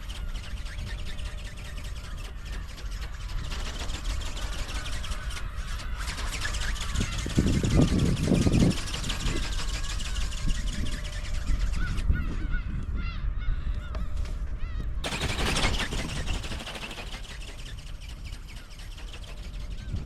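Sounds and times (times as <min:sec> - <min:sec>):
wind buffeting microphone: 0:00.0 - 0:20.0
birds honking calls: 0:15.0 - 0:20.0.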